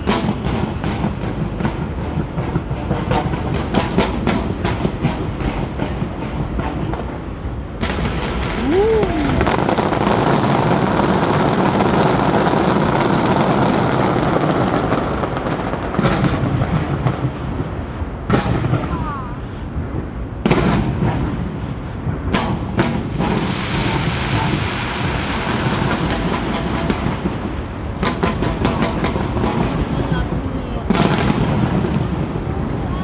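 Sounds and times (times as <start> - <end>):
fireworks crackling: 0.0 - 33.0
fireworks popping and cracking: 0.0 - 33.0.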